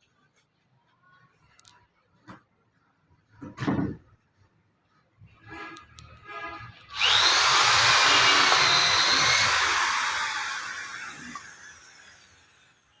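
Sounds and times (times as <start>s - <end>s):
power tool whirring: 6.9s - 12.9s.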